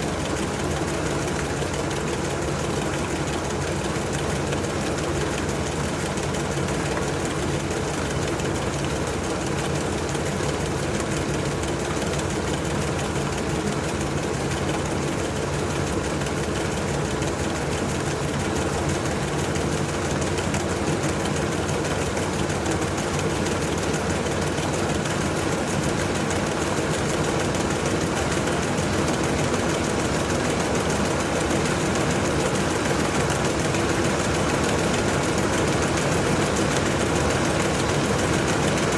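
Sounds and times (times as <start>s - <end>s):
washing machine running: 0.0s - 38.9s.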